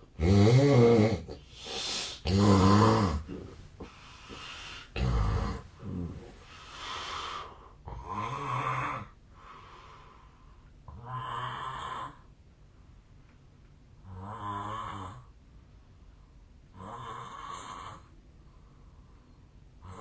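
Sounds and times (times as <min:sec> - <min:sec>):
man snoring heavily: 0:00.2 - 0:03.4, 0:04.9 - 0:06.1, 0:06.9 - 0:09.1, 0:10.9 - 0:12.2, 0:14.1 - 0:15.2, 0:16.8 - 0:18.1
soft breaths: 0:01.4 - 0:02.3, 0:03.0 - 0:08.1, 0:08.9 - 0:10.9, 0:15.5 - 0:20.0.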